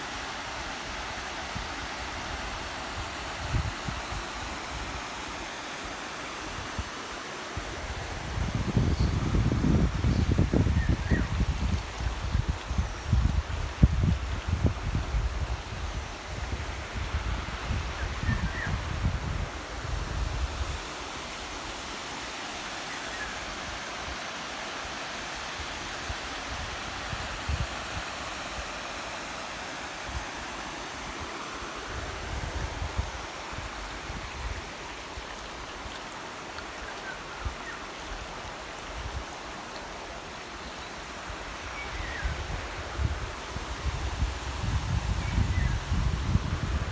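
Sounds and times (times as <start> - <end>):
waterfall water rushing: 0.0 - 46.9
wind buffeting microphone: 7.7 - 20.9, 41.8 - 46.9.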